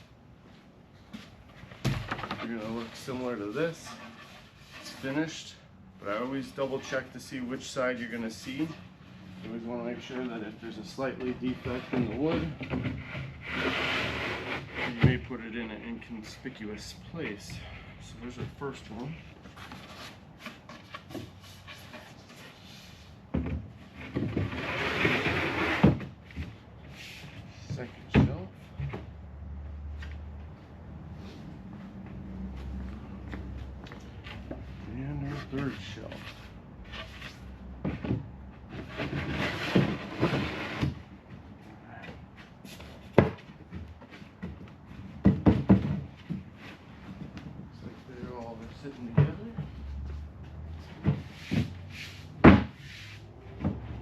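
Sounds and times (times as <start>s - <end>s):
wood scraping: 1.5s - 8.8s, 9.4s - 15.4s, 18.3s - 27.9s, 33.9s - 41.4s
loud wooden knocks: 45.2s - 46.4s.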